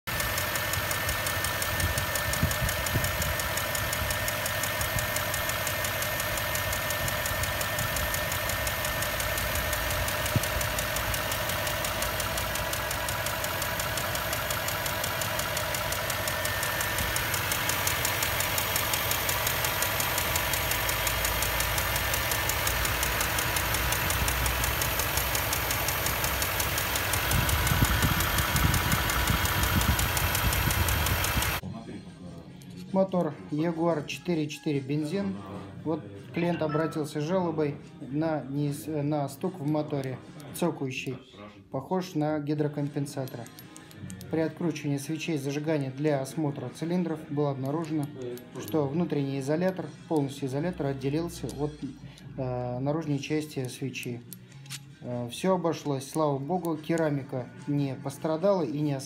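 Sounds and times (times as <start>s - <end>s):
car engine with rapid ticking knock: 0.0s - 31.6s.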